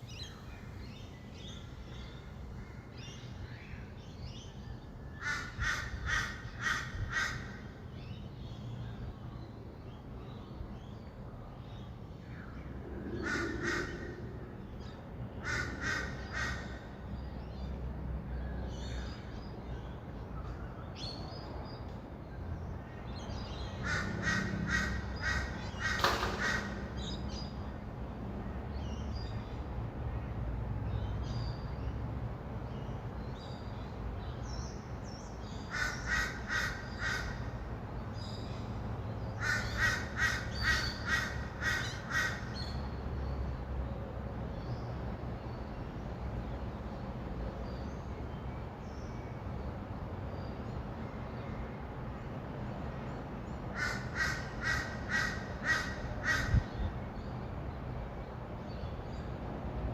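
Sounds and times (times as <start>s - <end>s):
distant city traffic rumble: 0.0s - 59.9s
birds calling harshly: 0.1s - 8.7s, 11.8s - 17.6s, 23.2s - 27.7s, 34.4s - 38.6s, 39.2s - 43.0s, 53.5s - 57.4s.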